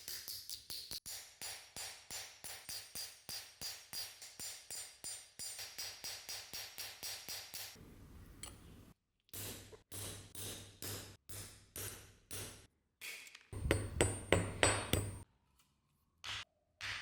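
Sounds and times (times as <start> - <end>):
hammer tapping on metal: 13.6 - 15.2.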